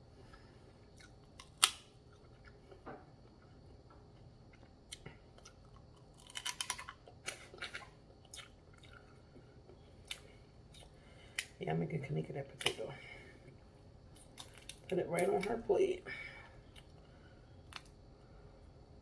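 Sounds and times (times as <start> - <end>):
crackly food crunches: 0.3 - 11.6, 14.1 - 15.6, 16.6 - 18.0.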